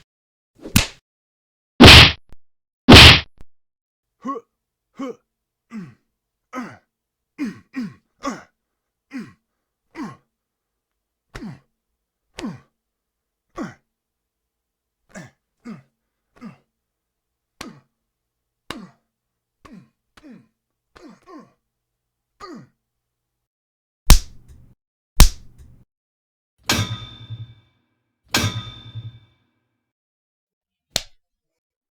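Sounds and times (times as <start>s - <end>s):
vocal grunts: 4.2s - 6.0s, 6.6s - 8.5s, 13.6s - 13.8s, 19.7s - 21.6s, 22.4s - 22.7s.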